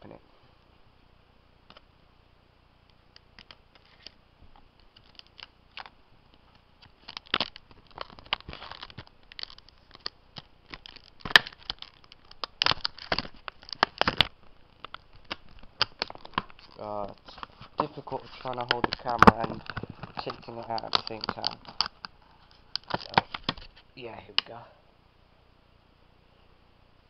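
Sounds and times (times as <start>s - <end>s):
plastic packaging crinkling: 3.2s - 23.9s.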